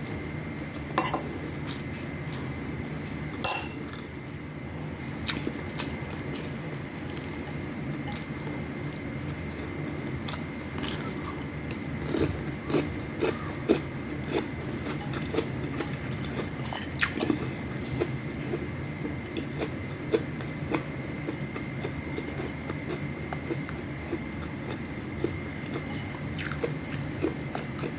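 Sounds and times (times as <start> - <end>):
chewing and crunching fried food: 0.0 - 2.7, 3.8 - 27.9
steady low hum: 0.0 - 27.9.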